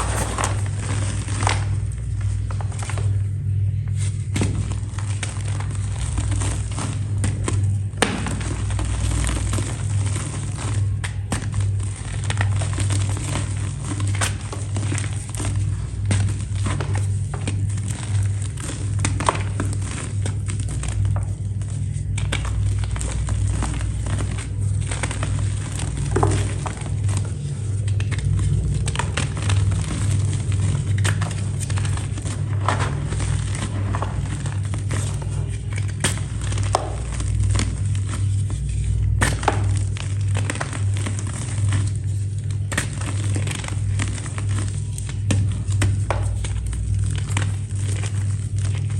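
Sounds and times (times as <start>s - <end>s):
crisp material crushed by hand: 0.0s - 48.9s
steady low hum: 0.0s - 48.9s.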